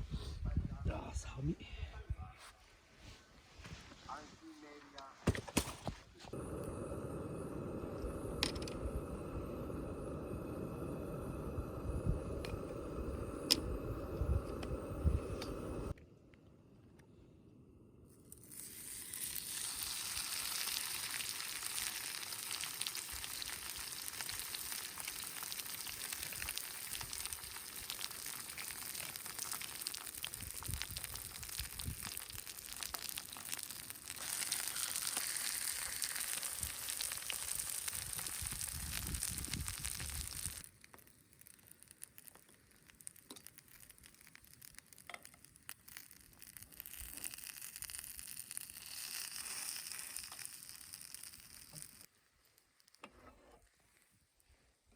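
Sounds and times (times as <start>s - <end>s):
food sizzling in a pan: 18.4s - 54.0s.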